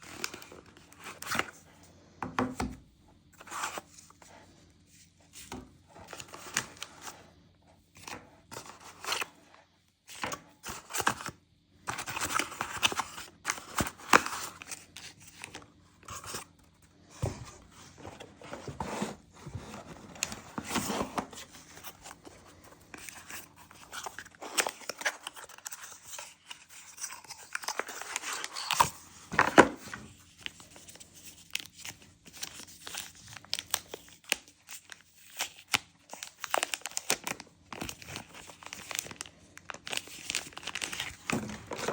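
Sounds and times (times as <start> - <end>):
packaging tearing and crinkling: 31.4 - 41.9.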